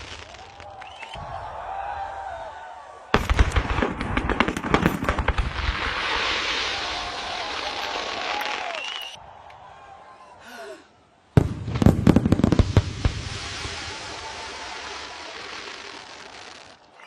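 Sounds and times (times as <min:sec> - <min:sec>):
fireworks bangs and crackles: 0:00.0 - 0:01.4, 0:03.1 - 0:09.2, 0:11.4 - 0:16.9
hissing crackle: 0:12.4 - 0:17.0.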